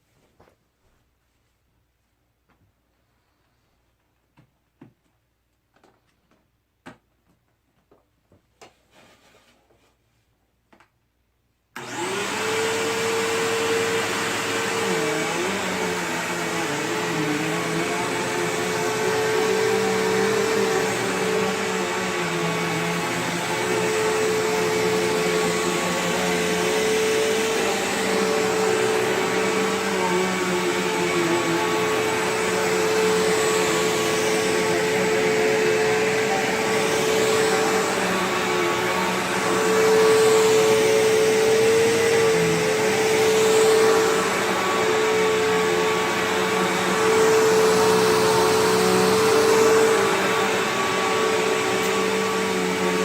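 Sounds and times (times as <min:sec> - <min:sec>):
vacuum cleaner running: 0:11.8 - 0:53.0.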